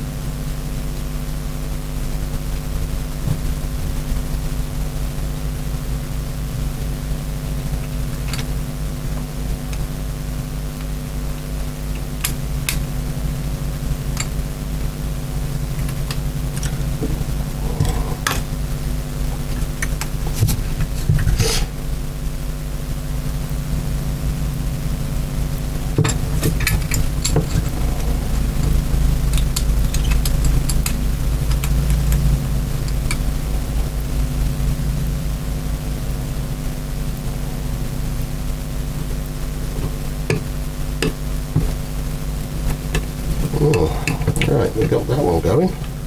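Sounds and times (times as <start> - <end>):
low mechanical hum: 0.0 - 46.0.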